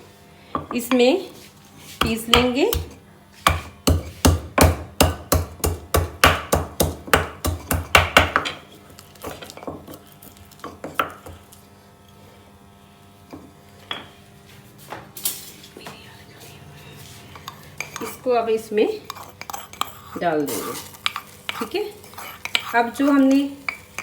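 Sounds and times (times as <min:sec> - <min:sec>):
pestle pounding in a mortar: 0:02.0 - 0:08.6, 0:21.0 - 0:24.0.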